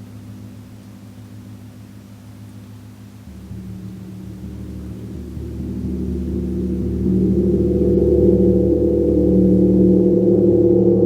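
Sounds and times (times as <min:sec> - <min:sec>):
gong sounding: 0:03.3 - 0:11.0.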